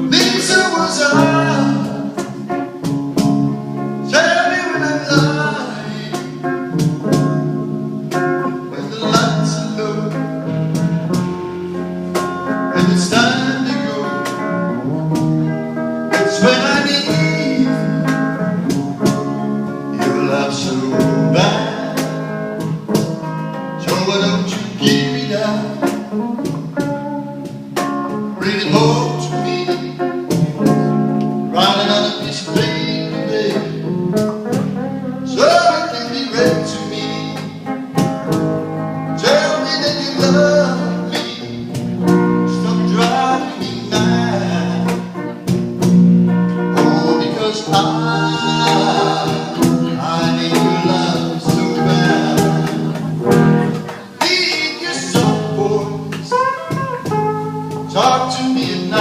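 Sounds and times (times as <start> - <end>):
person singing: 0.0 - 2.2, 4.1 - 6.5, 8.6 - 10.6, 12.7 - 15.3, 16.2 - 18.6, 19.9 - 22.3, 23.8 - 26.0, 28.4 - 30.9, 31.5 - 37.8, 39.2 - 45.3, 46.7 - 57.1, 57.8 - 59.0
guitar: 0.0 - 59.0.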